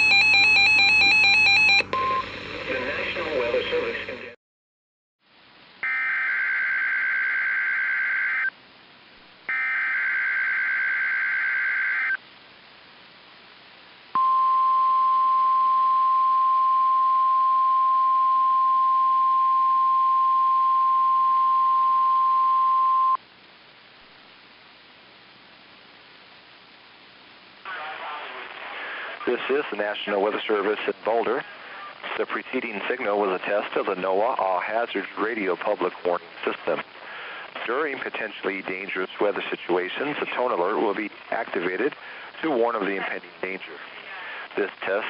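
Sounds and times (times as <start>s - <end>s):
steady warning alarm tone: 0.0s - 2.3s
warbling digital data screech: 9.5s - 12.2s
faint receiver hiss: 23.2s - 45.0s.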